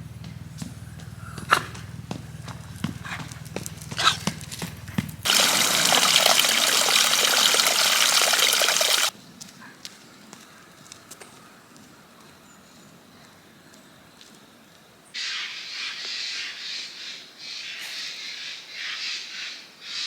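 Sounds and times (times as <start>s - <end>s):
water running: 5.3s - 9.1s.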